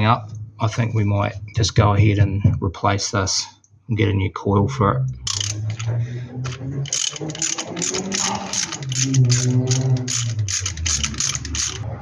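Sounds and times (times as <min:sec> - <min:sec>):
ratchet wrench clicking: 0:05.3 - 0:05.8, 0:06.9 - 0:11.9.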